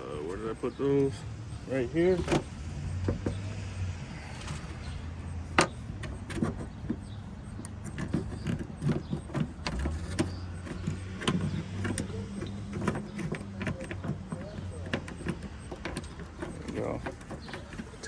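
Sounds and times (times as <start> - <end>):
metal bolts and plastic clicking: 5.5 - 18.0.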